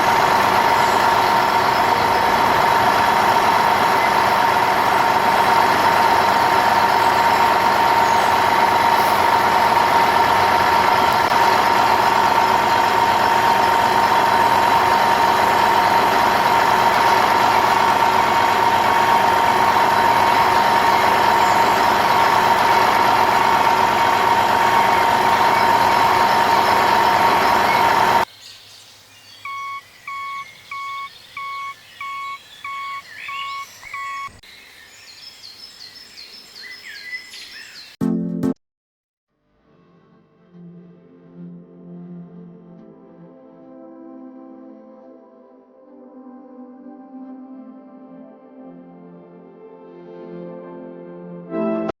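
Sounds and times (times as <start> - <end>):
short beeps: 29.5 - 34.4.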